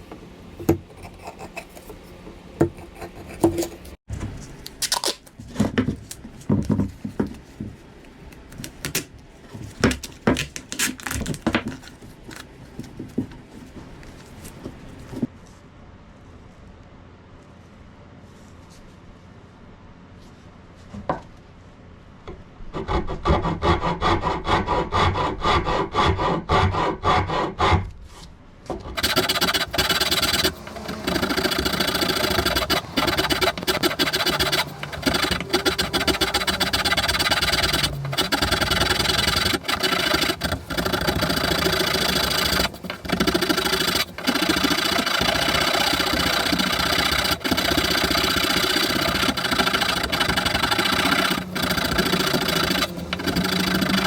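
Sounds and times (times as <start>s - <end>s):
file rasping on wood: 0.9s - 2.0s, 2.6s - 3.9s, 22.7s - 27.9s, 29.0s - 54.0s.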